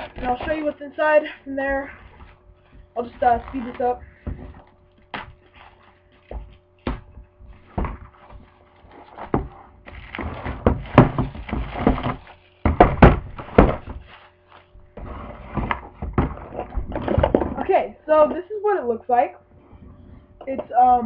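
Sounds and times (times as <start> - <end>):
box knocks and thuds: 6.3 - 14.1, 15.0 - 17.9
wrapping paper rustling and tearing: 8.1 - 9.3, 9.9 - 12.7, 13.4 - 15.4.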